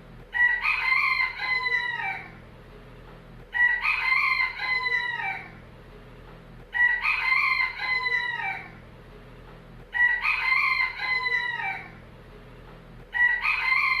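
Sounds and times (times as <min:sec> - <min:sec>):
rooster crowing: 0:00.3 - 0:02.4, 0:03.5 - 0:05.6, 0:06.7 - 0:08.8, 0:09.9 - 0:12.0, 0:13.1 - 0:14.0.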